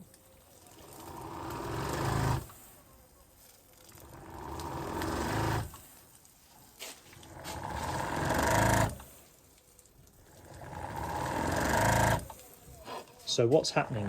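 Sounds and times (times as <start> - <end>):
pump motor running: 0.7 - 2.6, 3.8 - 6.0, 7.1 - 9.2, 10.2 - 12.5.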